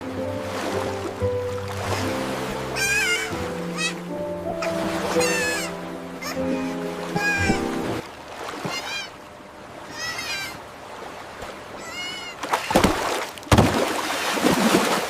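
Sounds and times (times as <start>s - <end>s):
splashing into water: 0.5s - 4.0s, 4.6s - 9.2s, 9.9s - 15.0s
kitten mewing: 2.8s - 4.0s, 4.6s - 7.8s, 8.7s - 9.2s, 9.9s - 10.6s, 11.8s - 12.8s.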